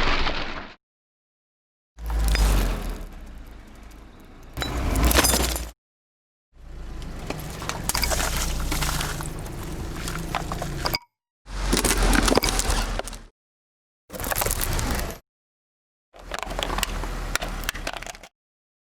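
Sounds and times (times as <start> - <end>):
low vehicle rumble: 2.0 - 5.7, 6.6 - 10.9
tyres crushing crunchy objects: 4.6 - 5.7, 7.1 - 13.3, 14.2 - 15.2.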